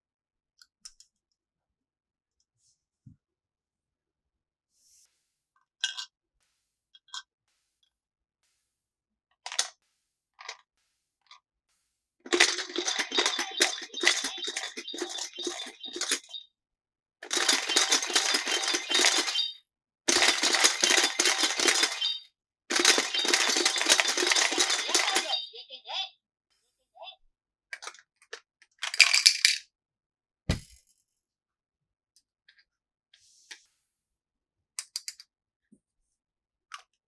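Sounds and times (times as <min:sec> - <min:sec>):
small hard objects clinking: 0:12.3 - 0:16.2, 0:17.2 - 0:19.5, 0:20.1 - 0:25.4, 0:29.0 - 0:29.6
scattered clicks: 0:12.3 - 0:16.4, 0:17.2 - 0:19.5, 0:20.1 - 0:25.4.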